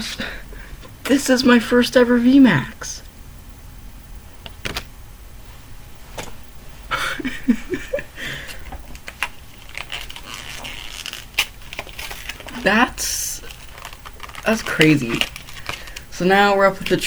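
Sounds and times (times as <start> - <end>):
cards and packaging clicking: 4.4 - 4.9, 8.9 - 12.7, 13.4 - 16.1
packaging rustling: 8.6 - 17.0.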